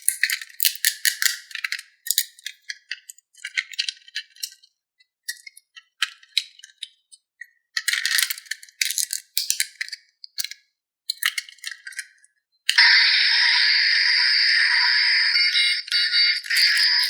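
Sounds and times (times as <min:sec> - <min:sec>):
plastic toy parts rattling: 0:00.0 - 0:07.2, 0:07.8 - 0:12.3.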